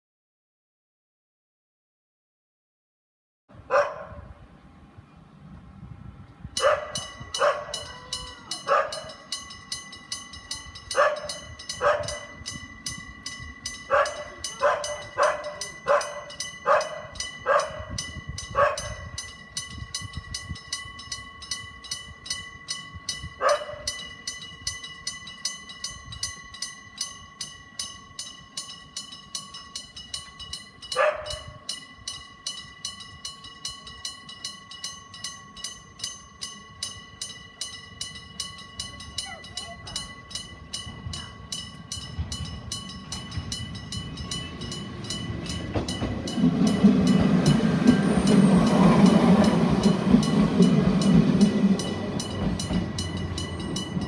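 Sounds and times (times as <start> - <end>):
dog barking: 3.7 - 4.3, 6.6 - 9.2, 11.0 - 12.3, 13.9 - 17.9, 18.6 - 19.0, 23.4 - 23.9, 31.0 - 31.5
level crossing bell ringing: 6.6 - 54.0.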